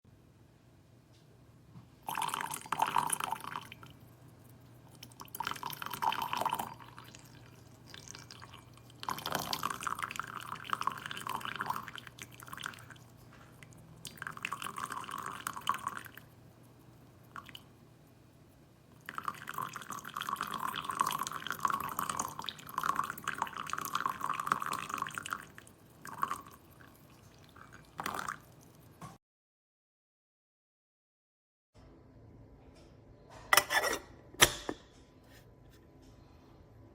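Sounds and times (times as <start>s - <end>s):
water pouring from kettle: 2.1s - 4.0s, 4.9s - 16.3s, 19.0s - 29.0s.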